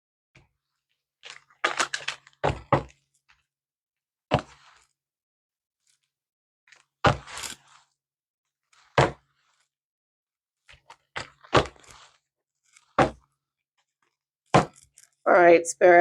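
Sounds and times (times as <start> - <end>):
cards rustling and scraping: 6.8 - 8.0, 10.7 - 13.2.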